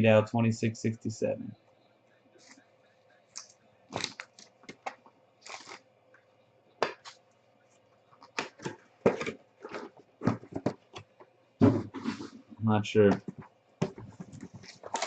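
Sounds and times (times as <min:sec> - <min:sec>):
cards rustling: 0:03.4 - 0:05.8, 0:08.2 - 0:12.4, 0:13.1 - 0:15.0.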